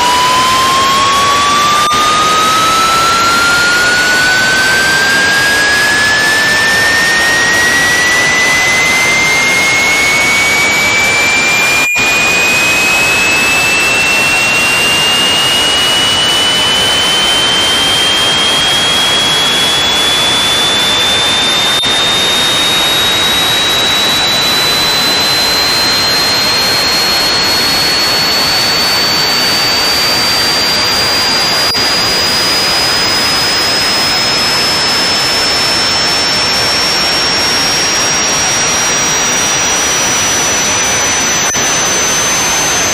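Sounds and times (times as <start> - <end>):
gliding electronic tone: 0.0 - 6.2
harsh static noise: 0.0 - 42.9.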